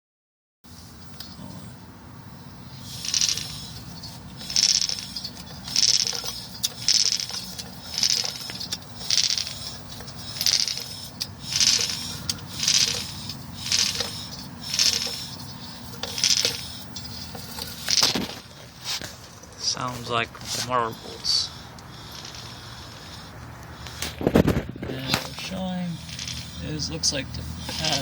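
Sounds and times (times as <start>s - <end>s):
wheel scraping rhythmically: 2.4s - 28.0s.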